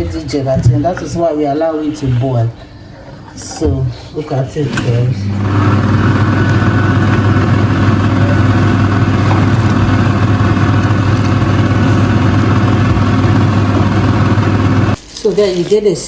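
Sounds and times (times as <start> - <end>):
motor running with low hum: 4.9 - 15.0.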